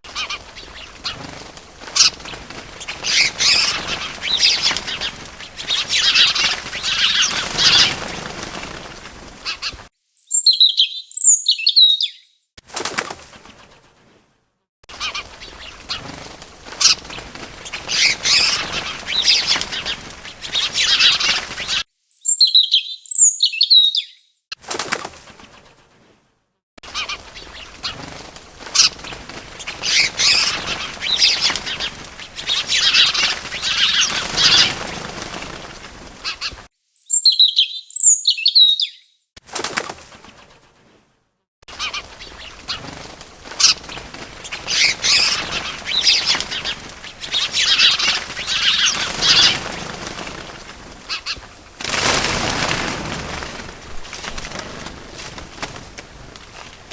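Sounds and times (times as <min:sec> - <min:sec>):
small birds chirping and fluttering: 0:00.0 - 0:14.2, 0:14.9 - 0:26.2, 0:26.8 - 0:41.0, 0:41.7 - 0:56.9
single bird high chirps: 0:10.0 - 0:12.4, 0:22.0 - 0:24.4, 0:36.8 - 0:39.2.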